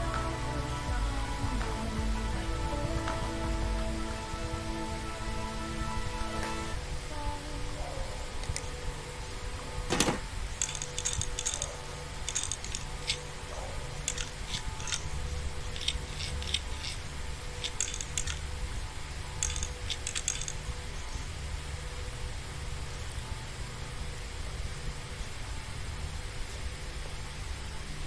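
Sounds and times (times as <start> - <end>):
small metallic clicks: 9.9 - 13.2, 13.9 - 15.1, 15.7 - 18.4, 19.4 - 20.8.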